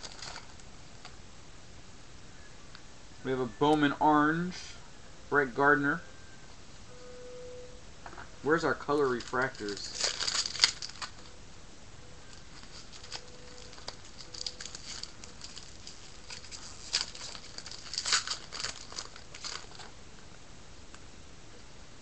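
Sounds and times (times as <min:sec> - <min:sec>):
trading cards rustling and flicking: 0:00.0 - 0:00.7, 0:08.9 - 0:11.3, 0:12.3 - 0:19.9.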